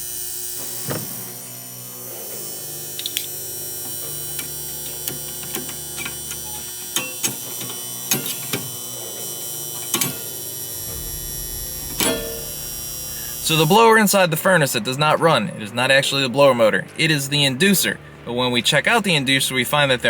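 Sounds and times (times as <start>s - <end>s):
electrical hum: 10.7s - 15.6s.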